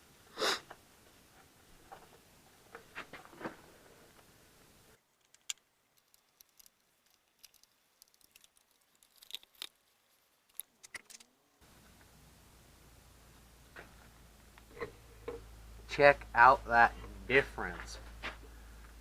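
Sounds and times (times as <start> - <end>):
small parts clicking: 5.1 - 11.3.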